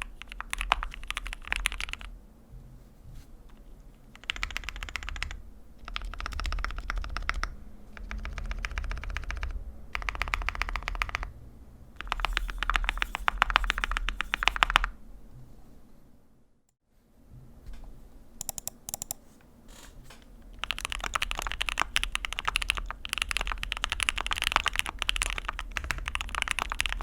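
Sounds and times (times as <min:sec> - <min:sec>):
mechanical keyboard typing: 0:00.0 - 0:02.1, 0:04.1 - 0:11.3, 0:12.0 - 0:15.0, 0:18.4 - 0:19.2, 0:20.5 - 0:27.0.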